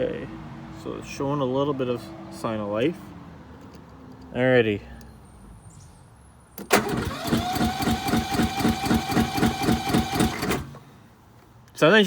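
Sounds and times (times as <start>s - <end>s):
electric starter cranking engine: 6.6s - 10.8s.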